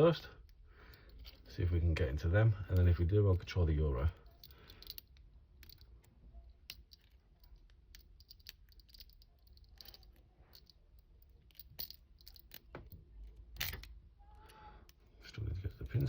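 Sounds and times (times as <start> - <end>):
hair grip clicking in padlock: 4.3 - 14.0.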